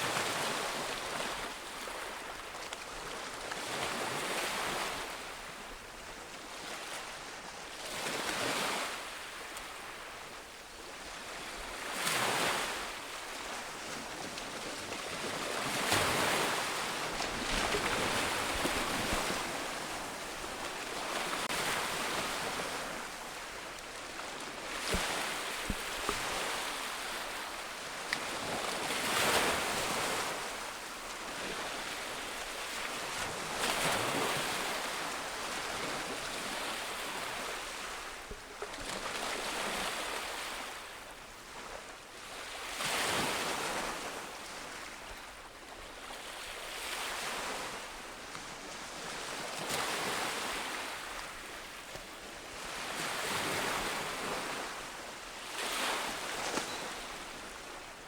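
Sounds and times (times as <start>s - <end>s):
wind: 0.0s - 58.0s
ocean waves breaking: 15.2s - 30.6s, 52.6s - 58.0s.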